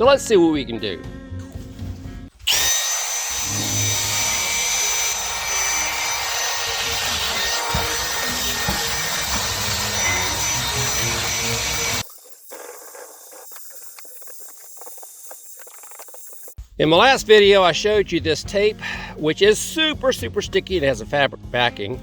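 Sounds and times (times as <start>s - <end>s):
motor whirring and whining: 2.5s - 16.6s.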